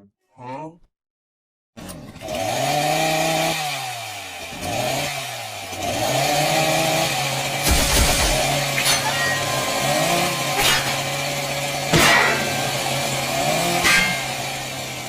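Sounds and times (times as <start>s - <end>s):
chainsaw droning: 1.9s - 15.0s
sharp hits: 7.6s - 15.0s.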